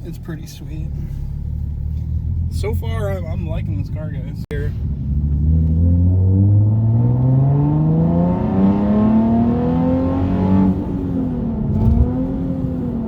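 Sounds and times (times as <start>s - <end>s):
car engine revving from inside: 4.7s - 13.0s.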